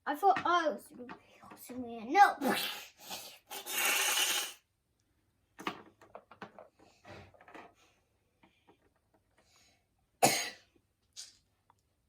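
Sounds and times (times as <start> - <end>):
plastic toys knocking and rustling: 0.1 - 2.0, 5.5 - 9.5.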